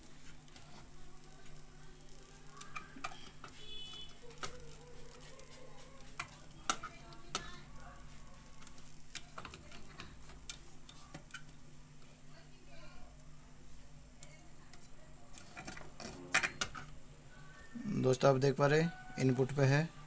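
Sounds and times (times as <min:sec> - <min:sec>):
steady low hum: 0:00.0 - 0:20.0
meter probes clicking and tapping: 0:02.4 - 0:07.6, 0:08.6 - 0:11.6.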